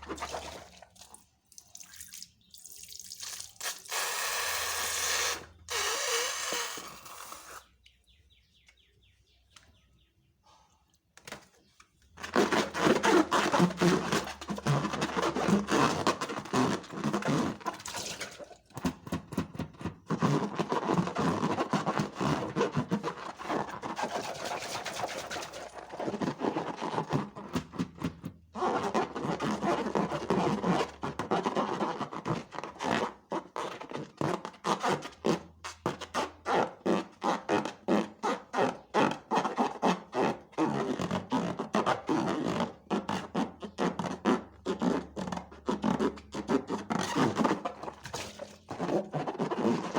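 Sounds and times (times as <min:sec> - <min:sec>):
slime squeezed by hand: 0:00.0 - 0:07.7.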